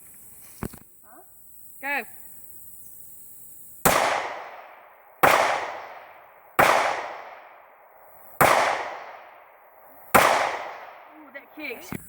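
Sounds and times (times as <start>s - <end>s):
gunshots with long echo: 3.8s - 11.4s.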